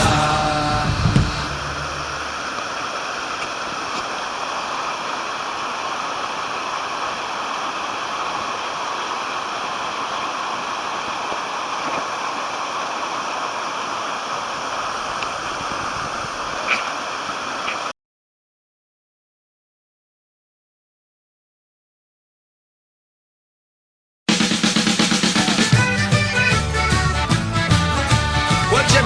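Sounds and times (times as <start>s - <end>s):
stream rushing: 0.0s - 17.9s.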